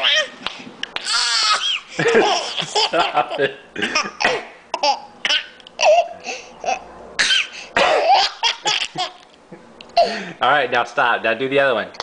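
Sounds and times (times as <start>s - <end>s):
toddler laughing: 1.0s - 6.8s, 7.4s - 9.3s
cough-like sounds: 3.8s - 4.6s, 7.2s - 8.3s.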